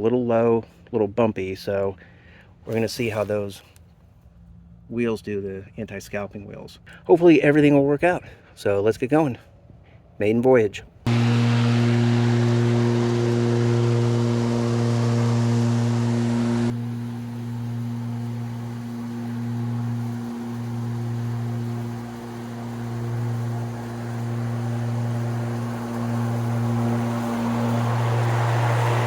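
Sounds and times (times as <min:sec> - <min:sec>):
electric lawn mower humming: 0:11.1 - 0:29.0.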